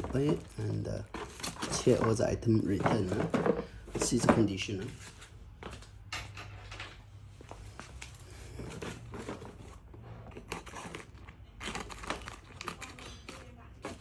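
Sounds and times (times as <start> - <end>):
packaging rustling and tearing: 0.0 - 3.3, 8.6 - 14.0.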